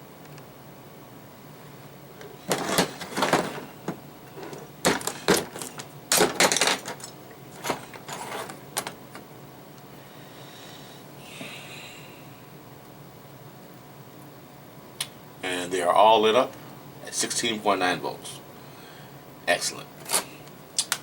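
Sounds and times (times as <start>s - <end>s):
small hard objects clattering: 2.4s - 9.0s.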